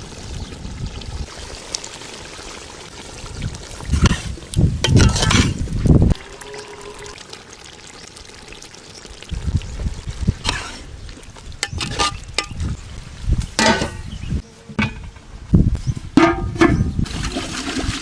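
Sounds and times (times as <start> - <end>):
liquid pouring into a pot: 17.0 - 18.0.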